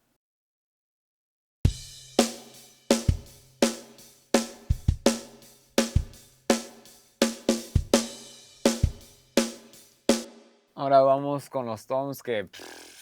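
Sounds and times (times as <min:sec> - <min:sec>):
bass drum thumps: 0:01.7 - 0:02.0, 0:04.5 - 0:06.2, 0:07.5 - 0:08.1
snare drum cracking: 0:02.2 - 0:10.3.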